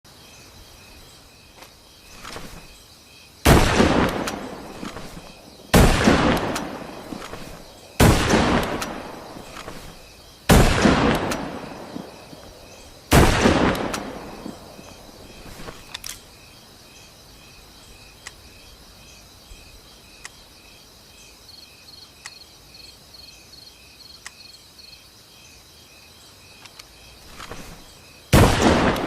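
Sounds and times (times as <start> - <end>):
rifle shots with echo: 3.5 - 9.8, 10.5 - 12.4, 13.1 - 14.9, 28.4 - 29.0.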